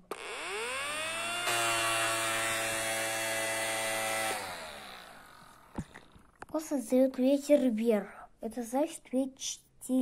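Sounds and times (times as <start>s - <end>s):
toy motor propeller whine: 0.1s - 6.2s.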